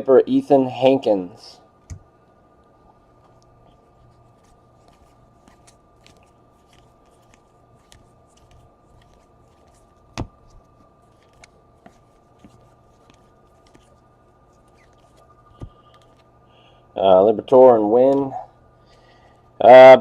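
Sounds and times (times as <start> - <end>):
faint steady hum: 0.0 - 20.0
trading cards being flipped: 3.2 - 16.3.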